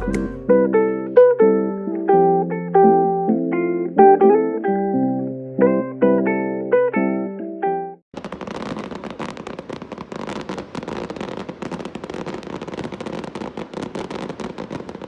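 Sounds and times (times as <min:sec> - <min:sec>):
fireworks crackling: 0:08.1 - 0:15.0.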